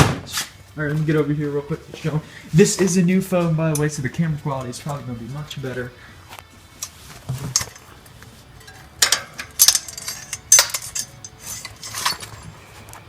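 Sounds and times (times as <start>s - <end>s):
wrench clanking on metal: 6.8s - 13.0s.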